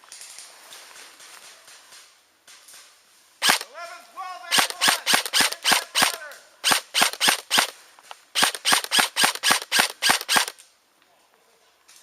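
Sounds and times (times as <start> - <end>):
airsoft gun firing: 3.4 - 3.7, 4.5 - 7.7, 8.4 - 10.6.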